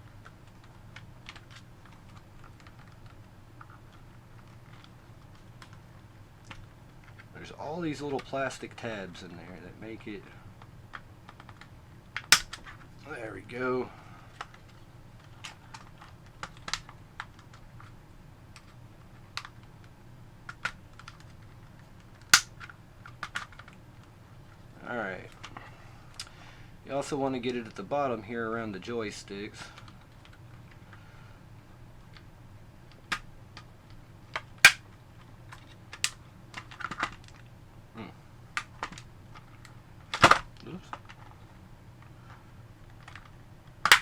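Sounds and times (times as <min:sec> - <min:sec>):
sharp plastic clicks and snaps: 0:10.9 - 0:12.6, 0:22.2 - 0:23.8, 0:32.9 - 0:34.8, 0:42.9 - 0:44.0
small plastic clicks: 0:42.9 - 0:44.0.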